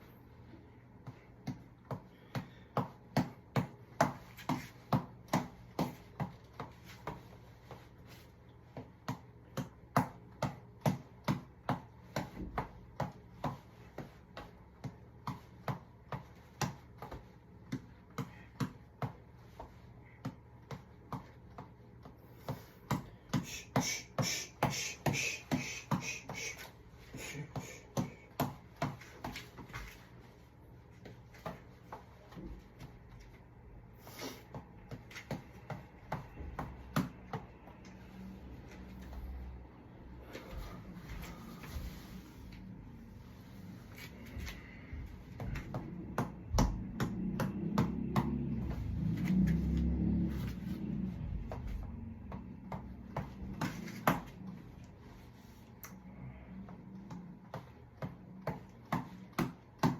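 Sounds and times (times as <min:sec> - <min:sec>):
reflex ball punches slapping: 0:01.0 - 0:07.3, 0:08.7 - 0:26.5, 0:45.3 - 0:48.8, 0:57.1 - 0:59.9.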